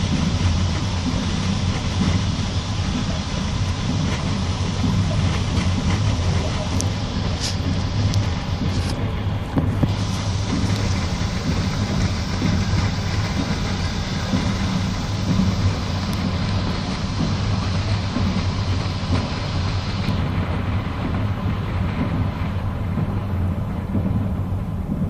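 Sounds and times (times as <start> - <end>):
high hiss: 0.0 - 22.4
low hum: 0.0 - 25.0
train wheels rumbling on rails: 0.0 - 25.0.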